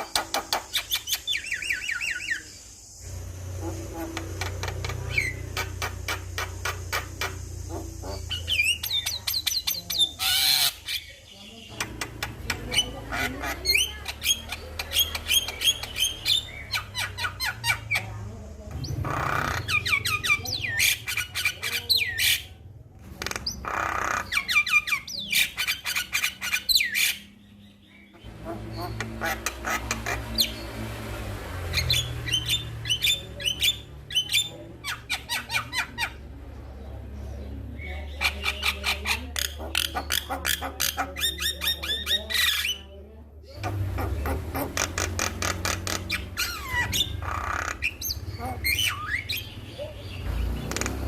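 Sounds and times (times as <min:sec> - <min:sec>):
bird singing and chattering: 0:00.0 - 0:51.0
bird harsh squawks: 0:28.1 - 0:30.6.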